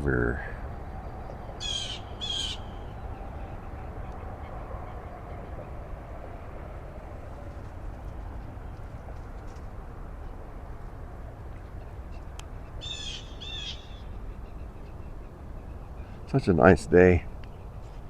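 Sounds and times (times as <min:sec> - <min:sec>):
bird short calls: 0:12.8 - 0:14.6.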